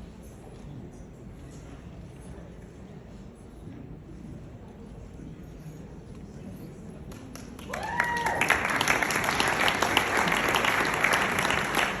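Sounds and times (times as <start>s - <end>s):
audience applauding: 7.3s - 12.0s.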